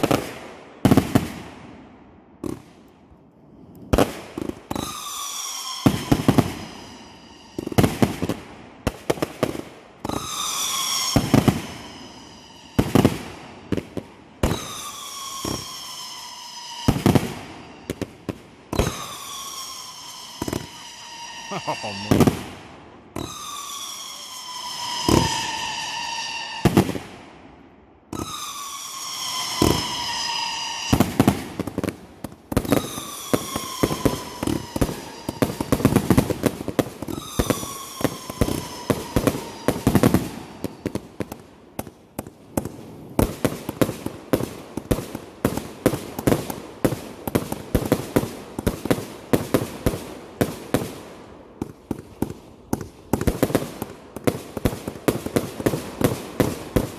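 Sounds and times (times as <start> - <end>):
crackling firework pops: 2.4 - 2.9, 29.6 - 29.9, 30.9 - 49.7, 51.6 - 56.9
whistling firework shells: 2.4 - 27.4, 28.1 - 50.9
firework bangs: 3.8 - 27.5, 28.1 - 56.9.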